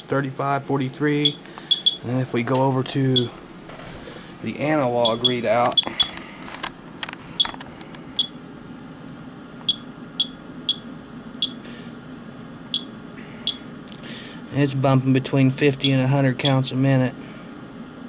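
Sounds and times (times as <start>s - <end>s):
faint low hum: 0.0s - 17.6s
geiger counter beeps: 1.2s - 2.2s, 5.0s - 6.1s, 8.2s - 8.4s, 9.7s - 11.6s, 12.7s - 13.7s.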